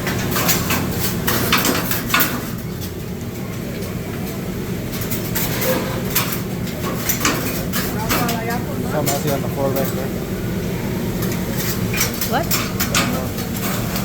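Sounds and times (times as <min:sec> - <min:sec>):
restaurant grill rumble: 0:00.0 - 0:14.0
metal utensils scraping on grill: 0:05.0 - 0:08.4.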